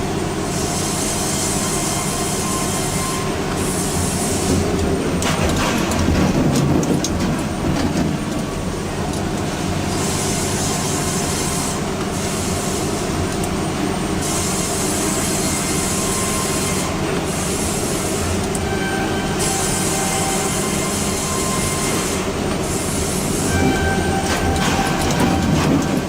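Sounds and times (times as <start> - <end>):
heavy machinery rumbling: 3.5 - 11.0, 16.2 - 26.0.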